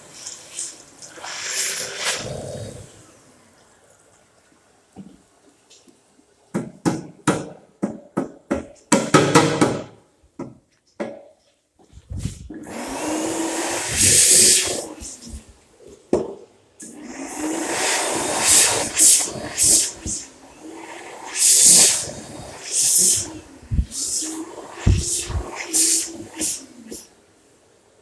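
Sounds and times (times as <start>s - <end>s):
hand dryer blowing: 0.0s - 3.0s, 12.0s - 15.6s, 16.8s - 27.2s.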